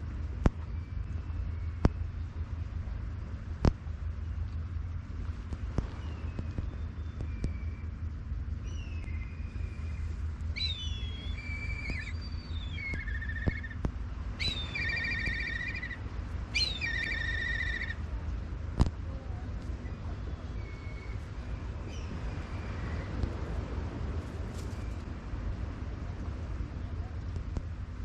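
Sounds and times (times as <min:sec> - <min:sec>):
steady low rumble: 0:00.0 - 0:28.0
songbird whistles and trills: 0:05.8 - 0:08.0, 0:08.6 - 0:18.0, 0:19.8 - 0:23.3.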